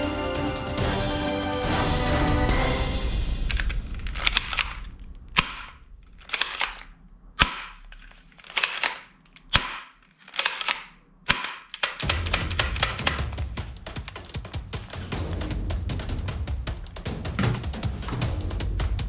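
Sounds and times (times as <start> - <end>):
drum-led music: 0.0 - 5.6, 12.0 - 19.0
toy gun firing: 3.6 - 13.4.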